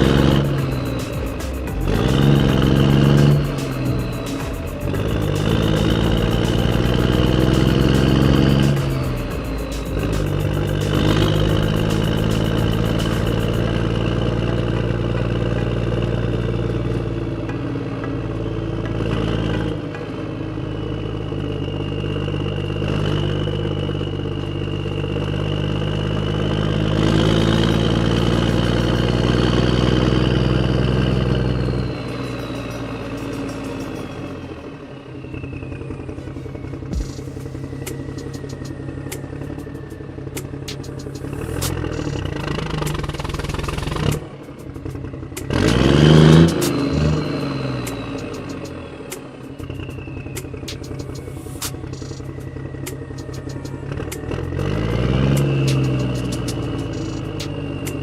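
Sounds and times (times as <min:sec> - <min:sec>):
thin whine: 0:00.0 - 0:14.7
engine running: 0:00.0 - 0:58.0.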